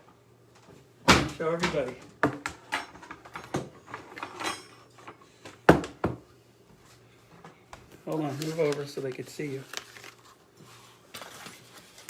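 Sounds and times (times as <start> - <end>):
kitchen knocks and clatters: 0.7 - 6.3.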